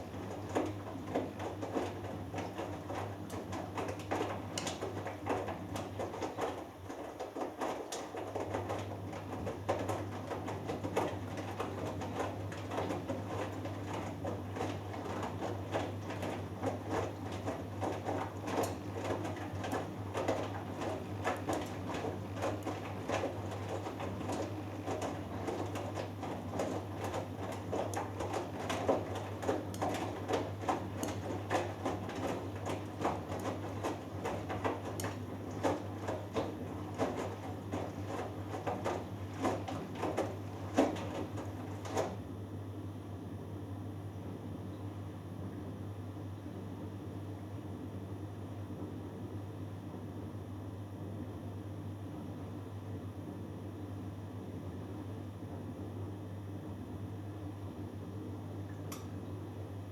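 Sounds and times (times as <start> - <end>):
laundry splashing in drum: 0.0 - 42.6
washing machine hum: 0.0 - 59.9.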